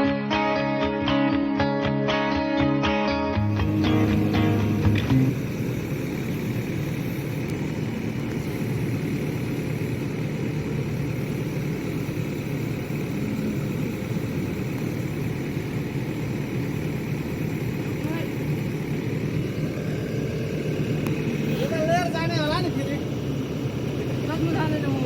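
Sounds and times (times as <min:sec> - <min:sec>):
heavy equipment engine droning: 0:03.3 - 0:25.0.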